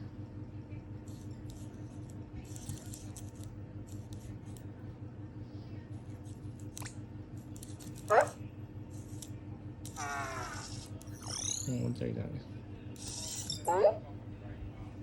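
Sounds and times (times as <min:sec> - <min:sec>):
steady low hum: 0:00.0 - 0:15.0
small motor clicks and ticks: 0:01.0 - 0:04.7, 0:06.4 - 0:08.1, 0:08.9 - 0:11.7.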